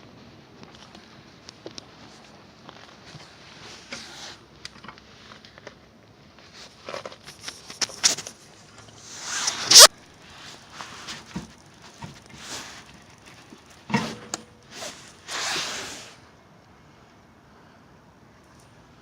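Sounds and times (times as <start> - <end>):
long metal scrape: 8.9 - 12.8, 13.9 - 16.2.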